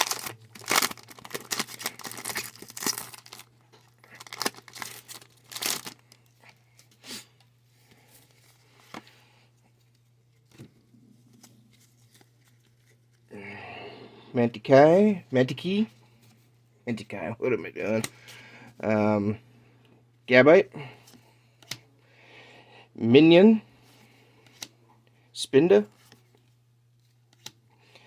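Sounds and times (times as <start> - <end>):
foil wrapper tearing and crinkling: 0.0 - 6.1
cards clicking and rustling: 0.0 - 7.0, 24.4 - 24.8, 26.0 - 27.7.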